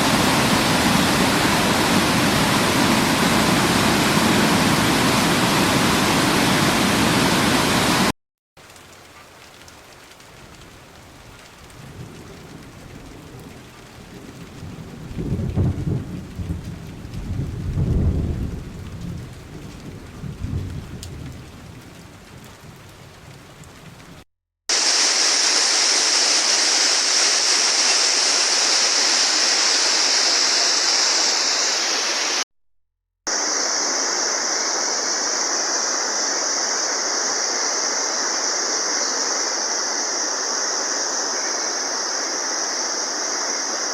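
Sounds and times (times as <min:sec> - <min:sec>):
waterfall roaring: 0:00.0 - 0:08.1, 0:24.7 - 0:32.4, 0:33.3 - 0:43.9
rain: 0:00.0 - 0:32.4, 0:33.3 - 0:43.9
high hiss: 0:24.7 - 0:32.4, 0:33.3 - 0:43.9.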